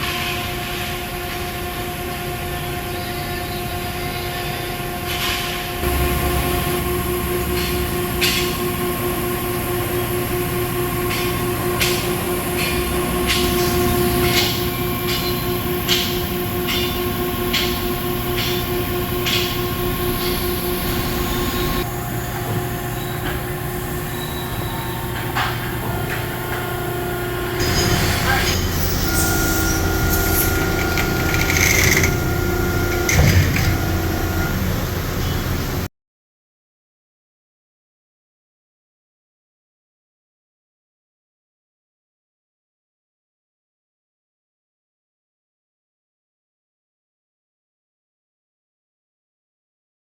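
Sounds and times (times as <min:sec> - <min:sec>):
hydraulic power unit humming: 0:05.8 - 0:35.9.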